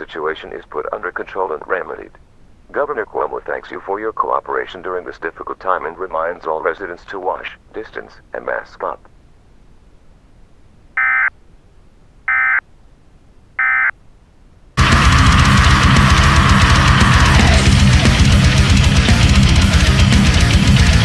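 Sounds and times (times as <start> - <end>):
heavy rock music: 14.8 - 21.0.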